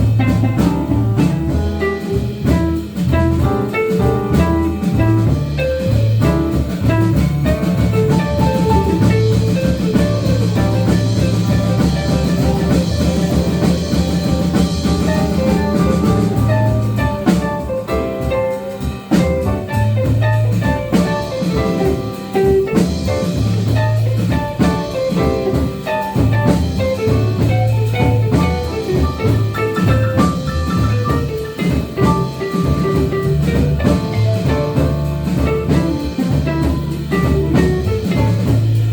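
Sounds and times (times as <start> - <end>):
jazz band playing: 0.0 - 38.9.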